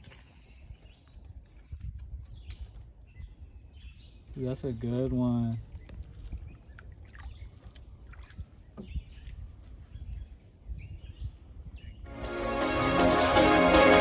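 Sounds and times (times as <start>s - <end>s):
background music: 12.1s - 14.0s.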